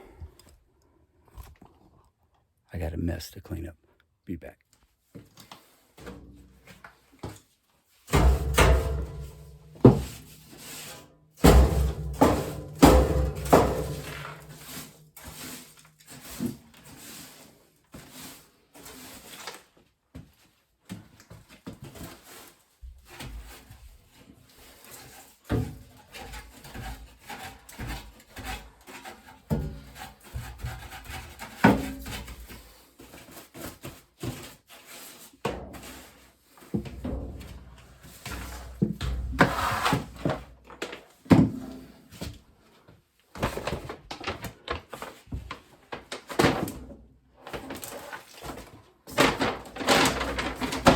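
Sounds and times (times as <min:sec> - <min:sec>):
objects rubbing scraping and knocking: 0:13.3 - 0:19.6, 0:21.9 - 0:41.0.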